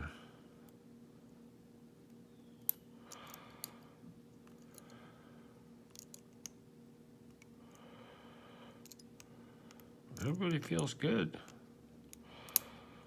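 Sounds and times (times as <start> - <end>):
low steady hum: 0.0 - 13.0
lock pick clicks: 2.6 - 3.8, 5.9 - 6.6, 8.8 - 10.8.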